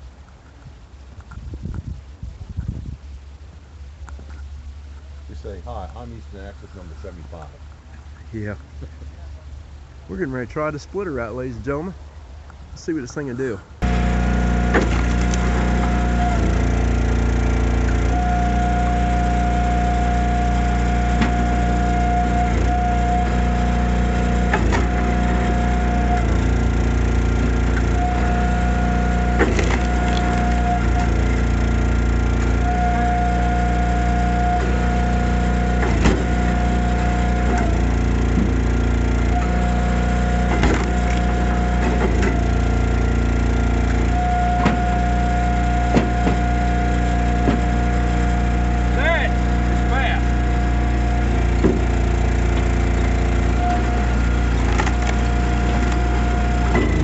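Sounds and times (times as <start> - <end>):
log splitter engine droning: 3.0 - 57.0
wood cracking as it splits: 29.4 - 30.6.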